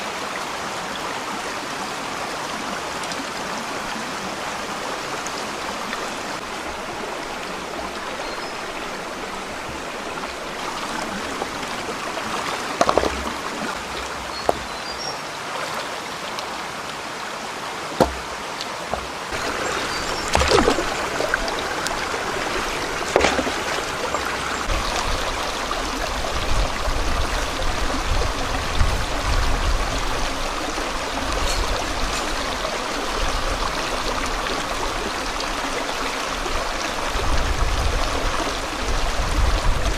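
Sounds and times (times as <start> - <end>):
stream water running: 0.0 - 39.9
short sharp knocks or splashes: 12.8 - 13.4, 18.0 - 22.0, 23.0 - 24.2.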